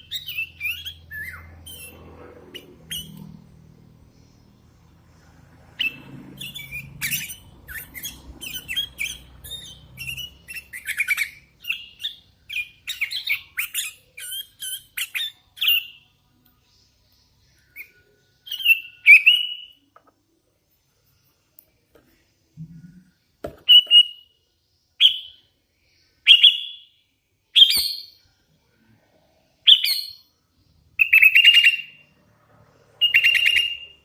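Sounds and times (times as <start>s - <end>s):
bird chirping and whistling: 0.0s - 3.4s, 5.8s - 16.0s, 17.6s - 19.8s, 23.6s - 24.3s, 25.0s - 25.4s, 26.2s - 26.9s, 27.6s - 28.2s, 29.6s - 30.3s, 31.0s - 32.0s, 32.9s - 34.0s.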